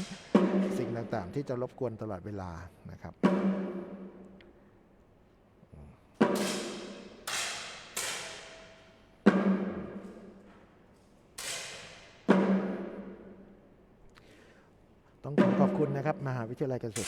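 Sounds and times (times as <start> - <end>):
booming drum beats: 0.0 - 1.6, 3.1 - 4.2, 9.2 - 10.1, 15.3 - 16.2.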